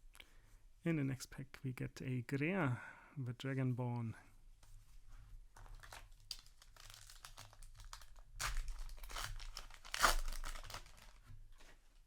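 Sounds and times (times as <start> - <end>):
foil wrapper crinkling: 5.6 - 11.2.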